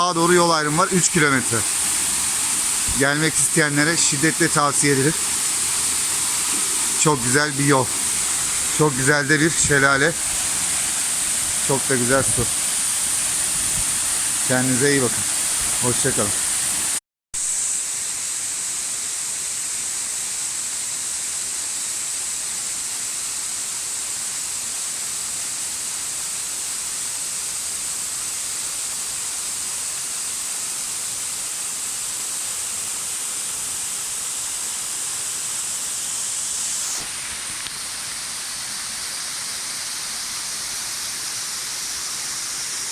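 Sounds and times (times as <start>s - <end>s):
waterfall pouring: 0.0s - 17.0s, 35.3s - 42.9s.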